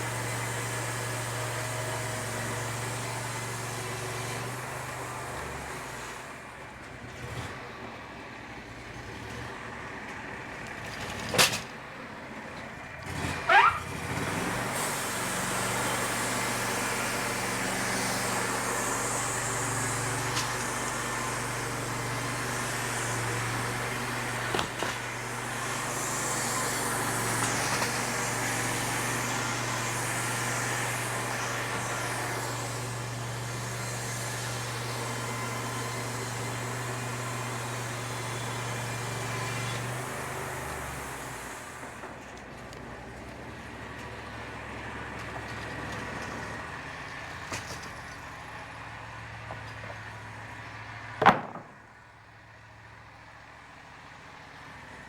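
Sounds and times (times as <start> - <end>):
engine running: 0.0 - 55.0
broad hiss: 14.7 - 42.0.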